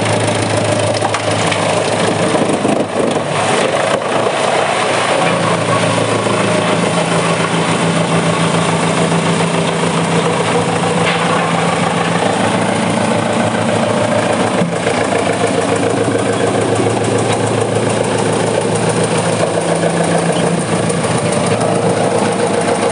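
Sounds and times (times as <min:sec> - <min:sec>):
wood chipper running: 0:00.0 - 0:22.9.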